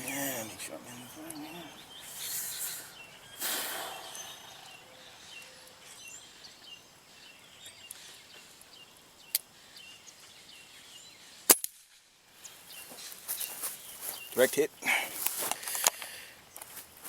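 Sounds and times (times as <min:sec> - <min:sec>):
faint bird chirps: 0:00.0 - 0:11.4
air rifle shot: 0:03.4 - 0:04.7.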